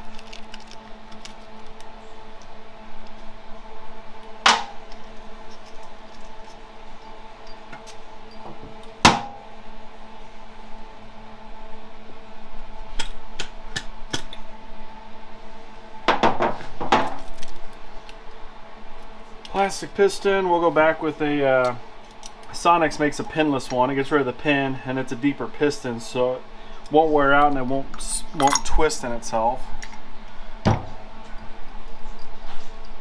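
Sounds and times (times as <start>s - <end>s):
shop hum: 0.0s - 33.0s
metal parts and tools clinking: 28.4s - 28.8s.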